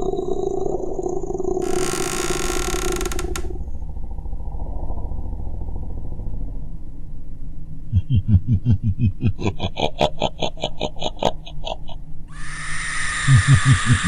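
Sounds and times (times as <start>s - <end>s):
creak of fine clicks: 1.6s - 3.6s.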